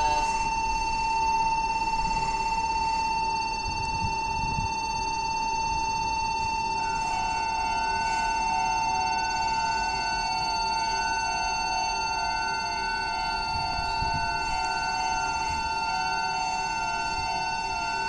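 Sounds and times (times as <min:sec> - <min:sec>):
high-pitched electronic warning tone: 0:00.0 - 0:18.0.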